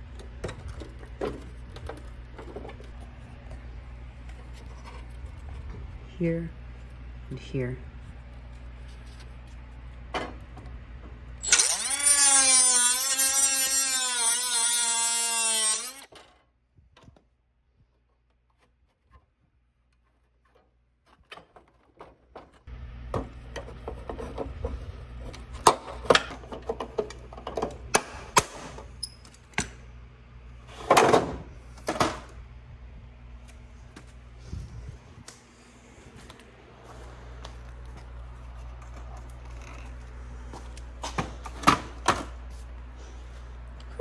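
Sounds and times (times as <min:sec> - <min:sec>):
parts clicking and knocking: 0:00.0 - 0:03.0, 0:17.9 - 0:29.8
power drill motor whine: 0:11.4 - 0:16.1.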